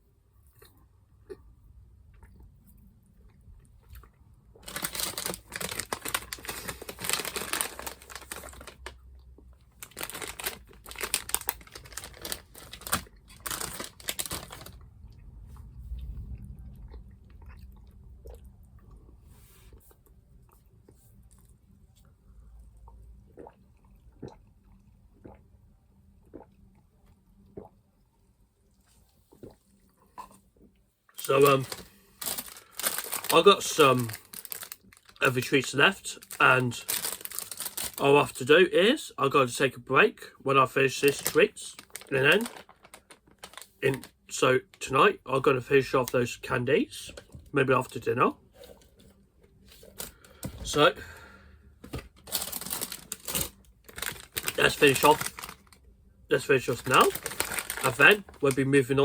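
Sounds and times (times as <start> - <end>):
crinkly packaging rustling: 4.6 - 14.9, 31.2 - 38.5, 40.9 - 44.9, 47.1 - 51.0, 51.8 - 59.0
chewing: 15.1 - 19.1.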